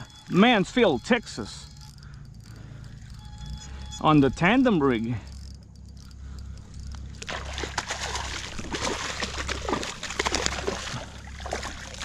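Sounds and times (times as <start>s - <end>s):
fish splashing in water: 7.1s - 12.0s.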